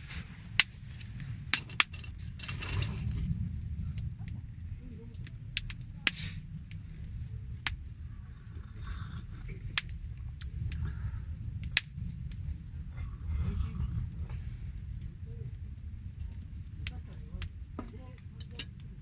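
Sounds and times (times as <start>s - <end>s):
campfire crackling: 0.0s - 19.0s
low steady rumble: 0.0s - 19.0s.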